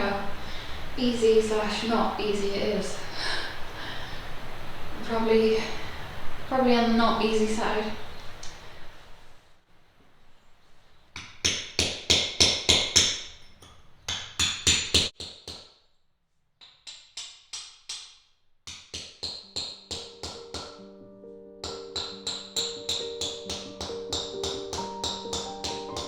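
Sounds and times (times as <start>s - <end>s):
tapping percussive beat: 18.7s - 20.9s, 21.6s - 26.0s
sustained melodic notes: 20.0s - 26.0s.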